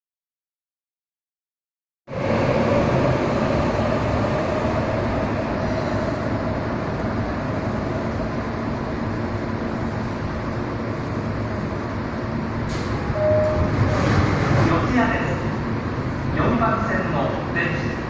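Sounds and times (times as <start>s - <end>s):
air-conditioning noise: 7.0s - 18.0s
faint tone: 13.2s - 13.7s.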